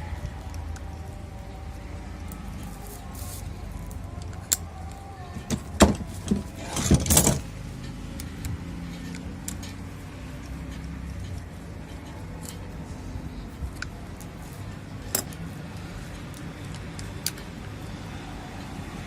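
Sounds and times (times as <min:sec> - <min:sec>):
metal parts clicking: 0:02.3 - 0:12.8, 0:13.5 - 0:17.8
metal parts clinking and clattering: 0:02.6 - 0:12.8, 0:13.5 - 0:17.7.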